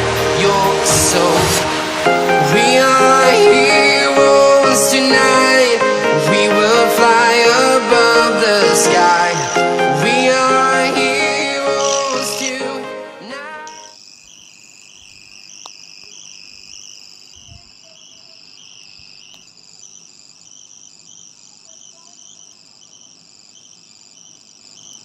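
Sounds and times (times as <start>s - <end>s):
crickets chirping: 13.8s - 25.0s.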